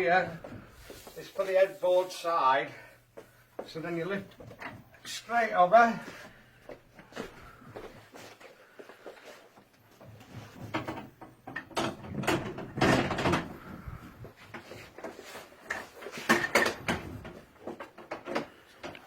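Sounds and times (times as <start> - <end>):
bed frame parts knocking and clattering: 4.3 - 5.0, 9.9 - 19.0.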